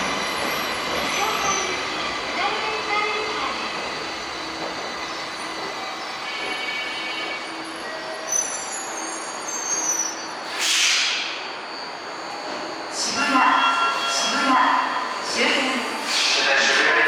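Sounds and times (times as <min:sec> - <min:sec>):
subway train running noise: 0:00.0 - 0:17.0
wheel and brake squeal: 0:05.3 - 0:12.9
air brake hiss: 0:10.4 - 0:11.4, 0:16.0 - 0:16.4.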